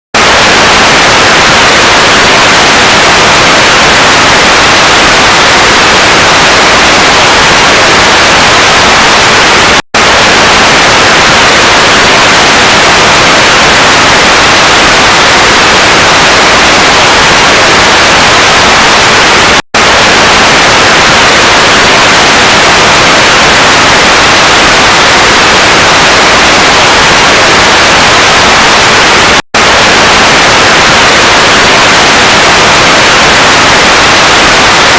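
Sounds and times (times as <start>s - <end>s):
loud static hiss: 0.2s - 34.9s.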